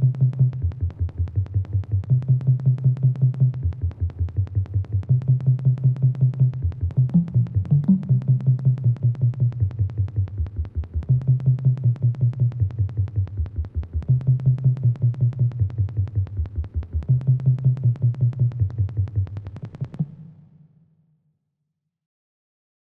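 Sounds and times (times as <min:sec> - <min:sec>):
low bass line: 0:00.0 - 0:20.0.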